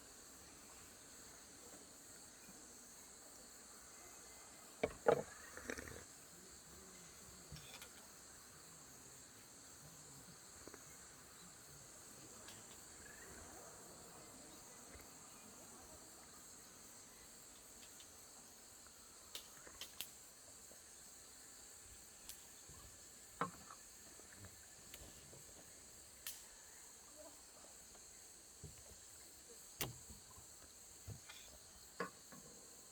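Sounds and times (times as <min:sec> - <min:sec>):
high-pitched insect chorus: 0:00.0 - 0:32.9
knock: 0:04.8 - 0:05.3.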